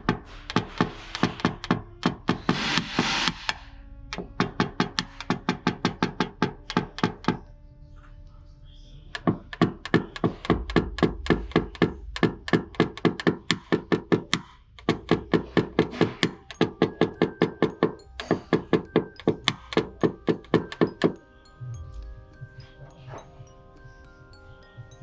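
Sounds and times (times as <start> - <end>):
hammer tapping on tool: 0.0 - 3.6, 4.2 - 7.4, 9.2 - 21.2.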